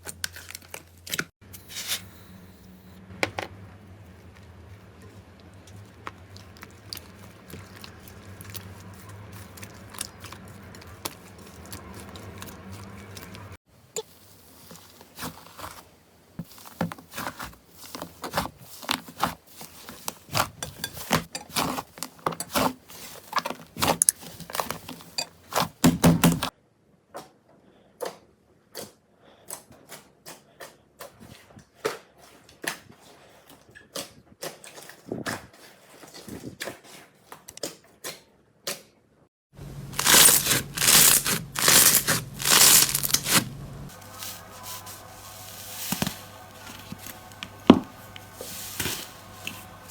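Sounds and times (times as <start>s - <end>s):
slime crackling and popping: 39.9s - 43.5s.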